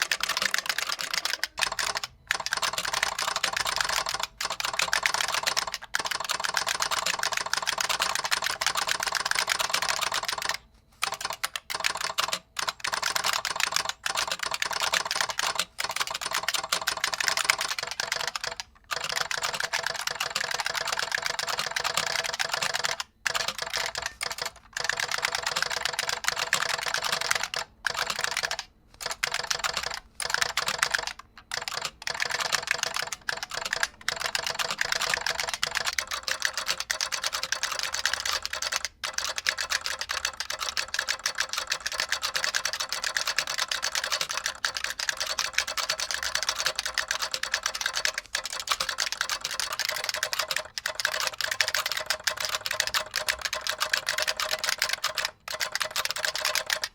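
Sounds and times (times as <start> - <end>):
fast typing on clicky keyboard: 0.0 - 56.9.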